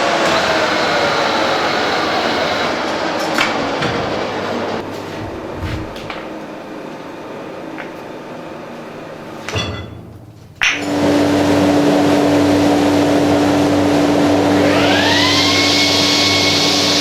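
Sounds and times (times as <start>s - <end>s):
motor humming with rushing noise: 0.0s - 6.6s, 10.8s - 17.0s
machine running: 0.0s - 6.7s, 10.3s - 17.0s.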